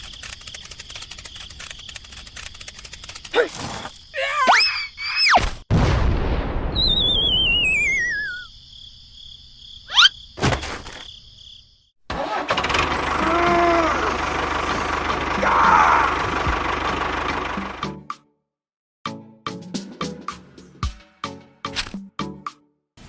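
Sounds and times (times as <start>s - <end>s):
sliding whistle-like tones: 6.7s - 8.5s.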